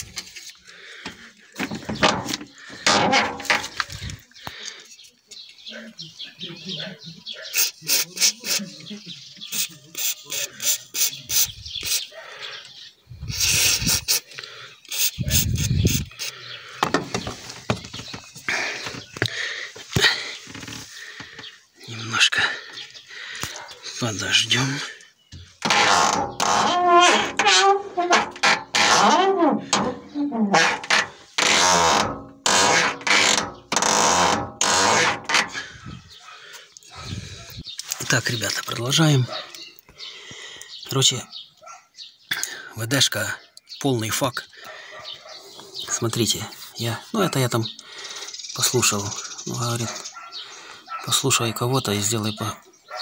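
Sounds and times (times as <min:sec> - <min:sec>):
car door creaking and squeaking: 0:01.6 - 0:04.2, 0:16.8 - 0:19.2, 0:25.4 - 0:36.0.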